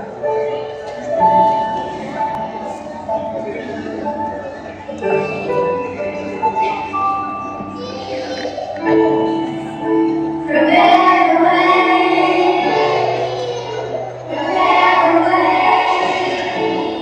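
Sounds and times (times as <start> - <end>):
instrumental accompaniment: 0.2 - 17.0
children singing: 7.6 - 17.0.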